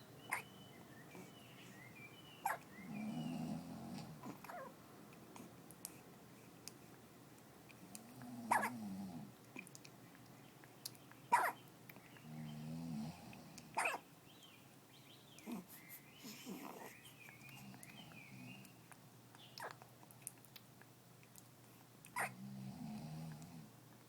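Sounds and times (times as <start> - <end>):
birds chirping: 0.0 - 4.7, 10.0 - 19.8
soft snoring: 2.9 - 4.5, 12.2 - 13.7, 22.2 - 23.7
person hiccuping: 8.5 - 8.7.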